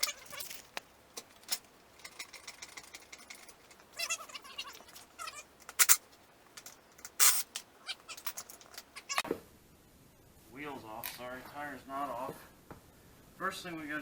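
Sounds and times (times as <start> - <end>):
metal clicks and clinks: 0.0 - 9.2
metal rattle: 0.0 - 9.2
short high squeaks: 3.8 - 6.0, 7.1 - 9.2.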